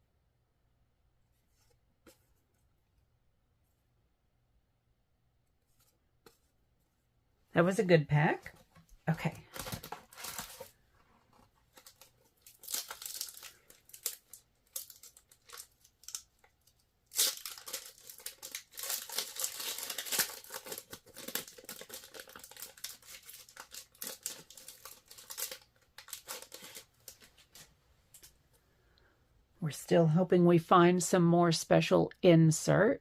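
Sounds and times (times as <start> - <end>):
cards being handled: 8.6 - 28.4
card pack wrapper tearing and crinkling: 9.4 - 10.8, 11.6 - 28.3.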